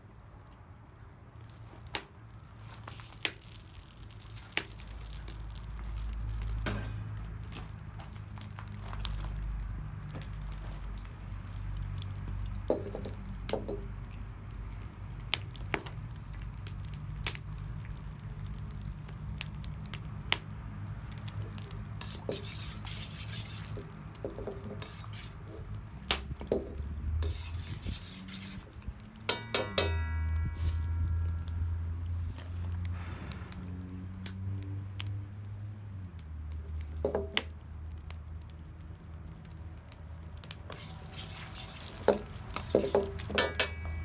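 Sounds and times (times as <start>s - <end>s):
utensil scraping a pan: 12.7s - 13.8s, 22.0s - 25.8s, 26.4s - 31.7s, 40.7s - 44.0s
metal ringing from strikes: 29.3s - 32.1s, 43.3s - 44.0s.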